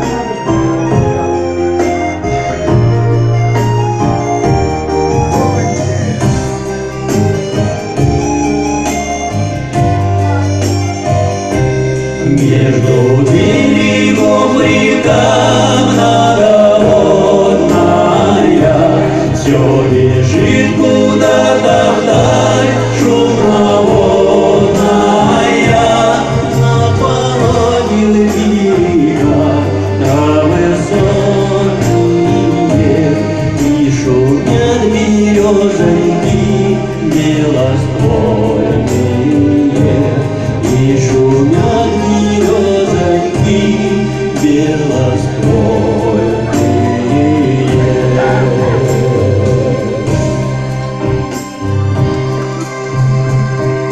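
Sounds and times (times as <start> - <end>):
band backing with bass: 0.0 - 53.9
choir-like singing: 12.2 - 53.9.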